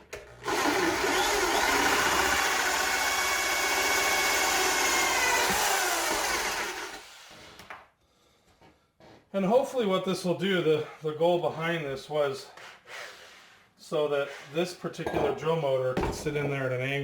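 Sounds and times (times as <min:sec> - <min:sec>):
power drill cutting wood: 0:00.4 - 0:07.6.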